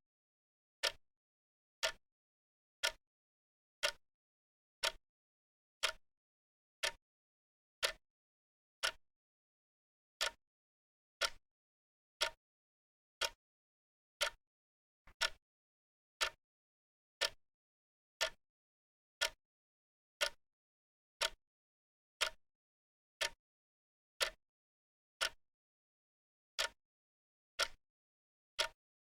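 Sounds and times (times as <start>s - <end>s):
clock ticking: 15.1s - 15.4s, 21.2s - 21.4s.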